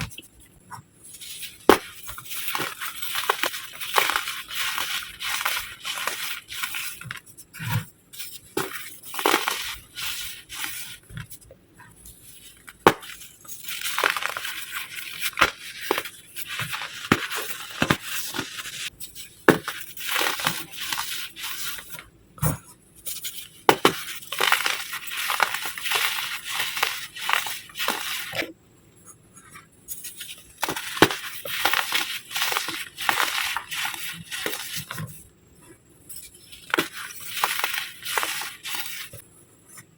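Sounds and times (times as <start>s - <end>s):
baking soda block crunching: 1.3s - 7.1s, 12.8s - 18.8s, 30.6s - 35.0s, 36.5s - 39.2s.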